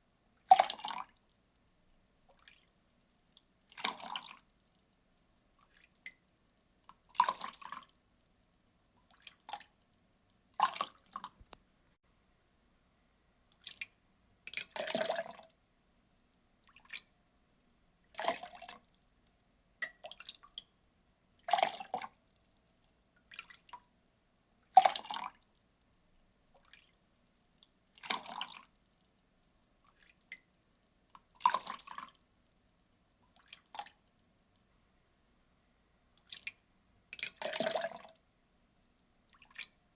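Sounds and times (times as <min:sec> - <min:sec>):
water pouring in splashes: 0:00.4 - 0:01.2, 0:03.7 - 0:04.5, 0:07.0 - 0:07.9, 0:14.5 - 0:15.5, 0:18.1 - 0:18.9, 0:24.7 - 0:25.4, 0:26.6 - 0:27.0, 0:28.0 - 0:28.7, 0:31.4 - 0:32.2, 0:37.1 - 0:38.2.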